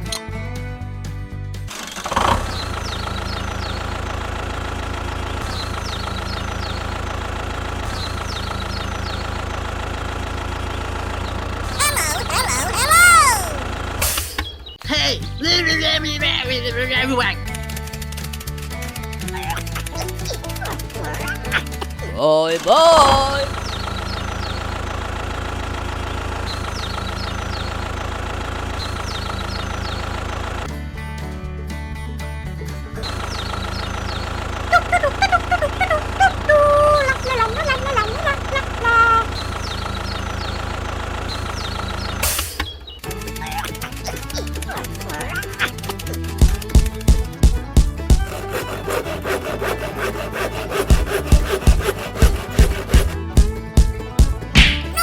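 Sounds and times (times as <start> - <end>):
tractor engine idling: 0.0 - 11.8, 22.8 - 42.4, 43.0 - 50.0, 51.2 - 55.0.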